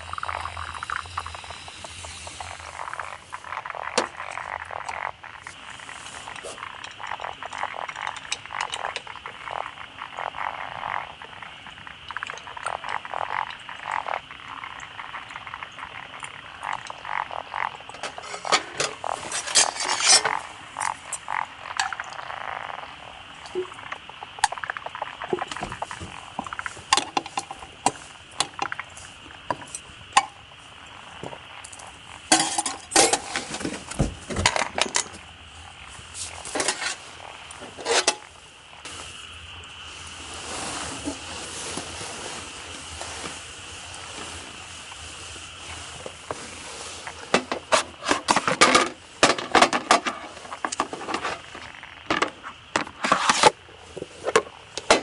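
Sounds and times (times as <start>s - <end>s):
frogs calling in chorus: 6.3s - 28.8s.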